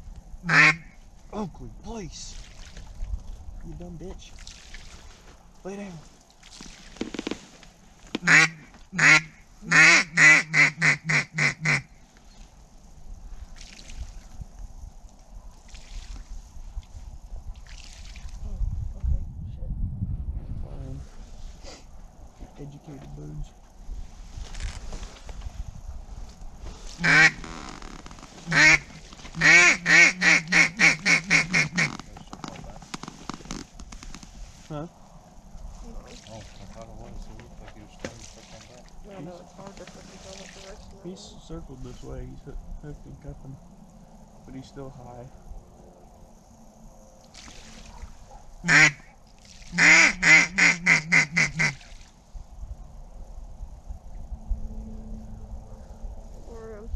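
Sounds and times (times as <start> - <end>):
duck call quacks: 0.5 - 1.0, 8.2 - 11.9, 27.0 - 27.4, 28.5 - 31.9, 48.6 - 49.1, 49.7 - 51.8.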